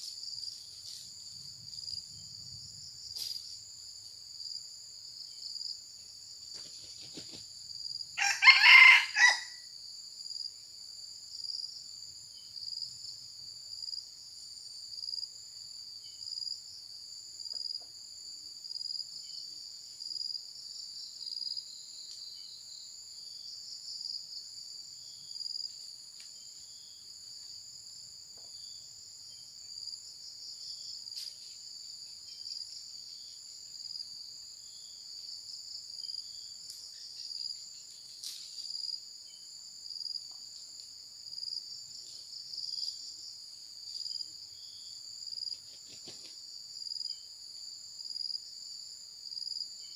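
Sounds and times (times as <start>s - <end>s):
insects chirring: 0.0s - 49.9s
young cockerel crowing: 8.2s - 9.7s.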